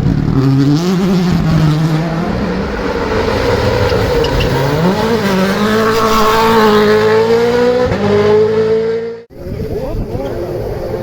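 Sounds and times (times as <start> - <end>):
rally car engine revving high: 0.0 - 11.0.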